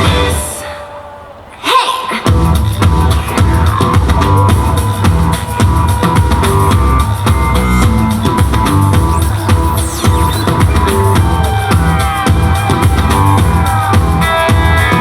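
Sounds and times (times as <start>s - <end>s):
loud pop-rock music: 0.0s - 0.8s, 2.2s - 15.0s.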